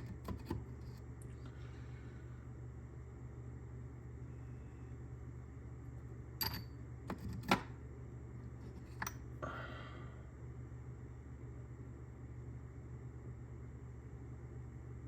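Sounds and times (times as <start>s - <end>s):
steady low hum: 0.0s - 15.0s
metal tools clicking and knocking: 6.4s - 7.6s.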